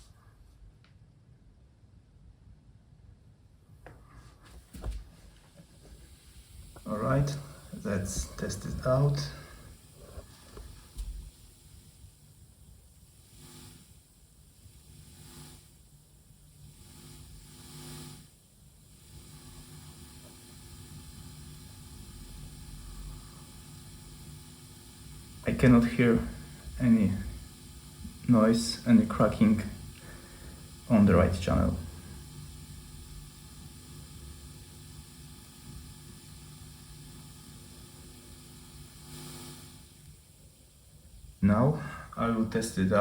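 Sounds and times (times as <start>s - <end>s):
faint low hum: 0.0s - 14.7s
steady hiss: 4.5s - 43.0s.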